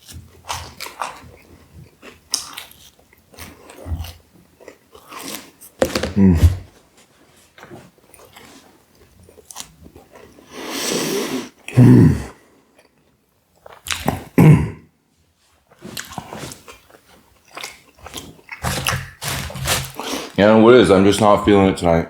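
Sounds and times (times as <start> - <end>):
man chewing: 0.0 - 6.7, 7.6 - 13.0, 13.6 - 14.4, 15.7 - 20.4
loud throat noises: 5.9 - 6.7, 11.7 - 12.4, 14.2 - 14.9.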